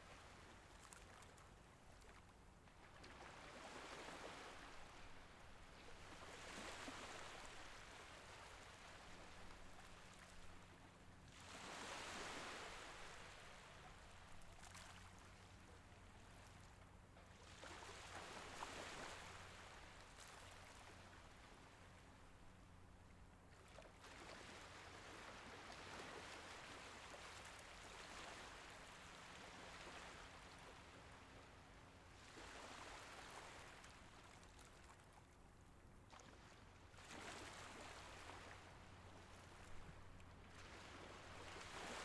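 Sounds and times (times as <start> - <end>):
gentle sea waves washing in: 2.9 - 16.6, 23.6 - 35.3, 36.1 - 42.0.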